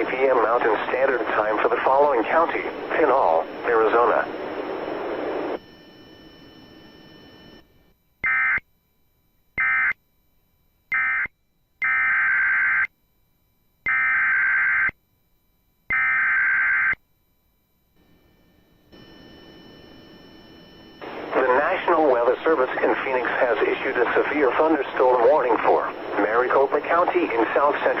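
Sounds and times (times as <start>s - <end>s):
data bursts: 18.8s - 28.0s.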